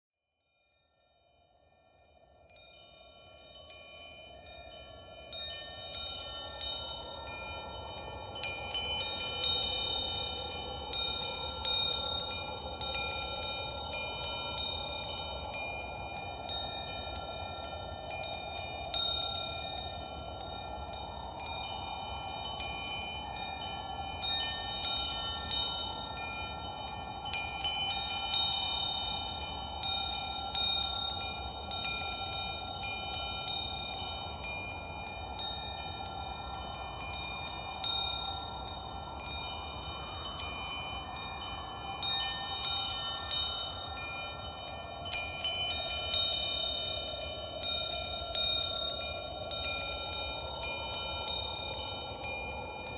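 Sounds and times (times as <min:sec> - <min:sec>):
wind chimes ringing: 0:00.5 - 0:52.9.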